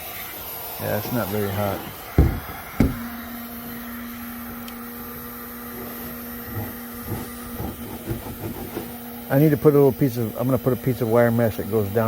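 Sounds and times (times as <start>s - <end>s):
heat gun blowing: 0.0s - 12.0s
knocks: 2.2s - 3.2s.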